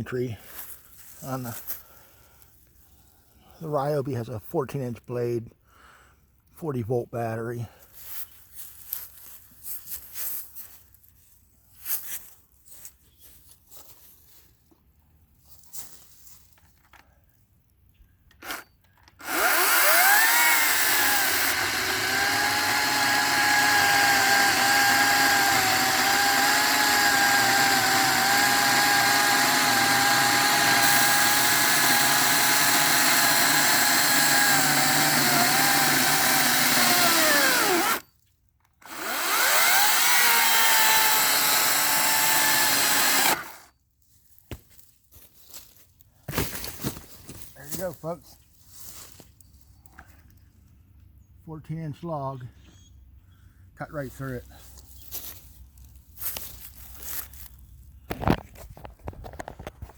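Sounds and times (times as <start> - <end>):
chainsaw cutting log: 18.4 - 38.1, 38.8 - 43.7.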